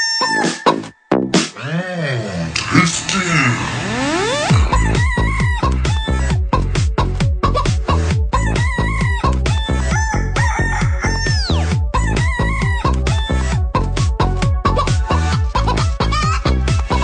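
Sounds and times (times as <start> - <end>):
long falling sweep: 2.4 - 5.6
electronic dance music: 2.6 - 6.9
chicken clucking and crowing: 8.6 - 12.9.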